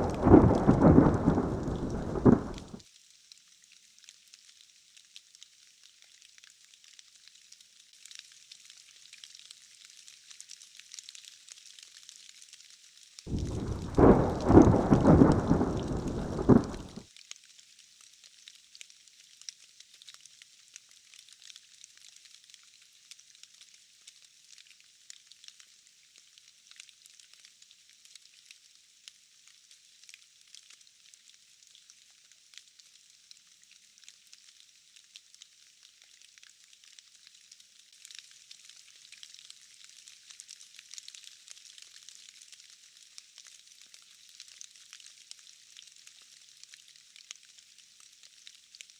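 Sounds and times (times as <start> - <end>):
loud rumble of thunder: 0.0 - 2.8, 13.3 - 17.0
faint hiss of rain: 0.0 - 48.9.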